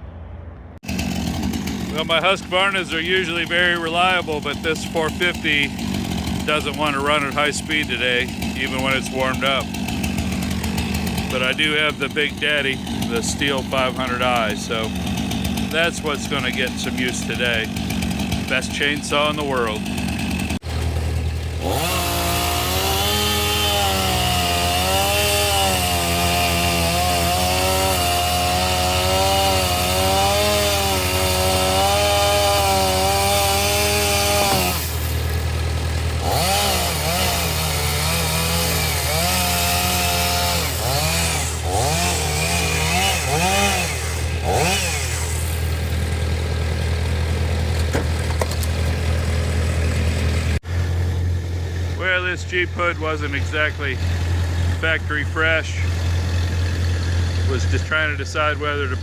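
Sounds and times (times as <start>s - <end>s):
chainsaw cutting wood: 0.8s - 59.0s.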